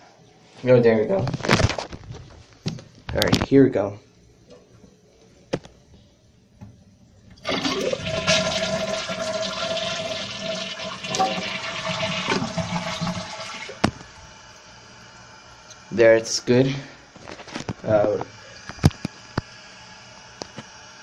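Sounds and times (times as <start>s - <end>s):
toilet flushing water rush: 7.3s - 14.5s.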